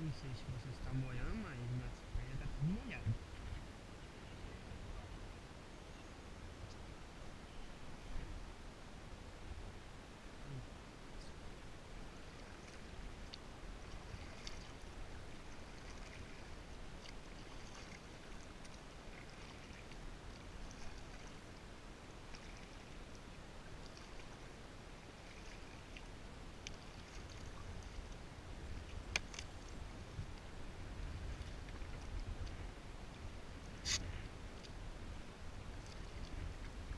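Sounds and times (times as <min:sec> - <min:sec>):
paddle splashing in water: 0:12.2 - 0:21.6, 0:22.2 - 0:29.9.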